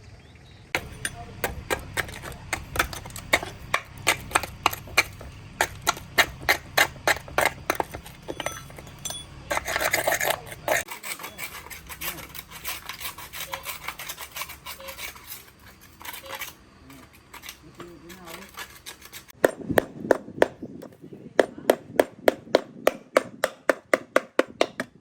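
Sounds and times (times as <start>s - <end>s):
low steady hum: 0.0s - 21.6s
rasping scrape: 0.8s - 19.9s
hand tool tapping: 19.4s - 25.0s.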